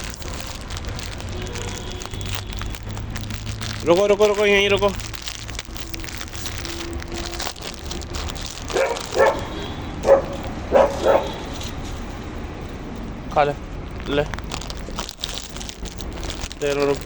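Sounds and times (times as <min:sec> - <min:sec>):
dog barking: 0:08.7 - 0:11.5.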